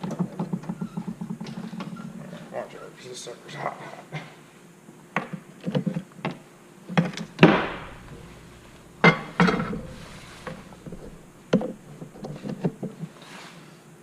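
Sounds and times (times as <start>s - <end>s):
objects knocking on hard surface: 7.0s - 13.0s.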